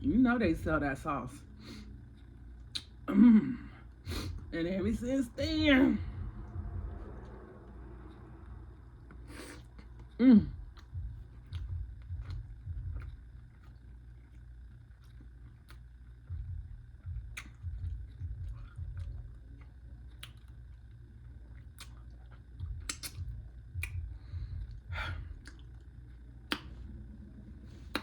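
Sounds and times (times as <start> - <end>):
wet lip smacks: 2.6 - 3.0, 17.3 - 19.2, 20.1 - 20.6, 21.5 - 24.0, 26.5 - 26.8
low thudding chews: 6.1 - 28.0.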